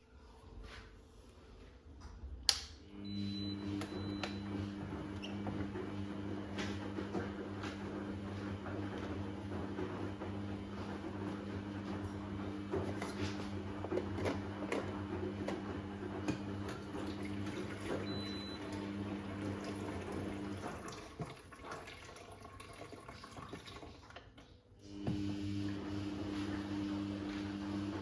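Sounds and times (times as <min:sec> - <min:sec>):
water running from tap: 0:16.9 - 0:24.1.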